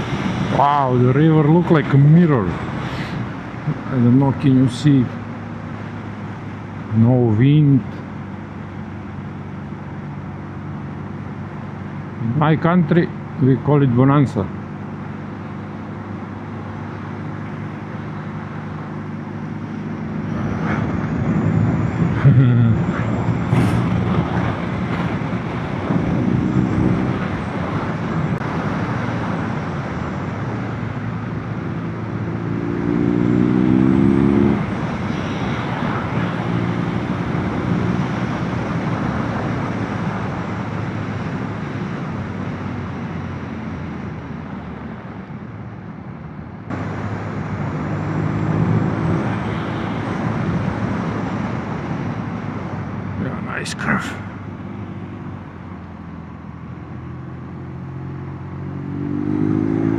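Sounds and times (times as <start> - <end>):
wind and road noise: 0.0 - 59.9
motorcycle engine revving: 31.9 - 38.4, 57.5 - 59.9.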